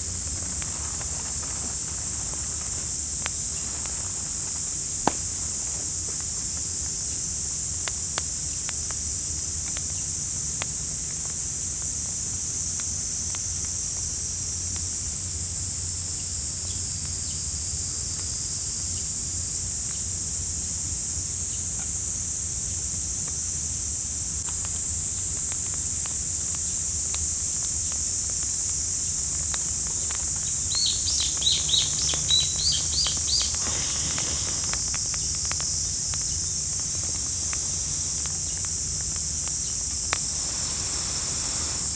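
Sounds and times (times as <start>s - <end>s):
insects droning: 0.0s - 41.9s
faint clicks: 24.4s - 41.9s
bird chirping: 30.4s - 34.8s.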